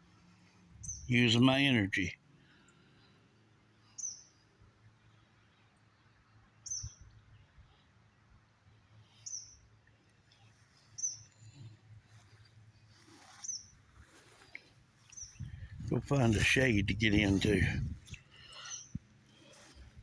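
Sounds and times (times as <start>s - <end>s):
faint low background noise: 0.0s - 20.0s
bird chirping: 0.8s - 1.2s, 3.8s - 4.5s, 5.5s - 7.6s, 9.0s - 13.8s, 14.5s - 15.8s, 18.0s - 19.7s.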